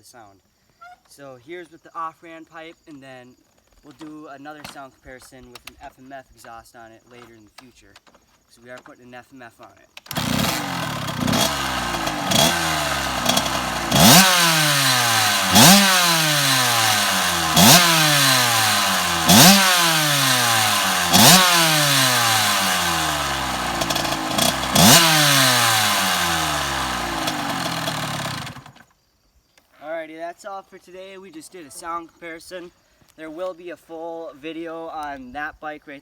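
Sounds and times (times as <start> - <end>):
dirt bike engine revving: 10.1 - 28.8.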